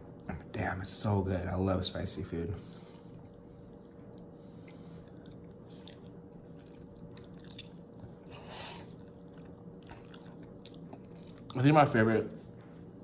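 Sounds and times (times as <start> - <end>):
person chewing noodles: 2.8 - 11.6.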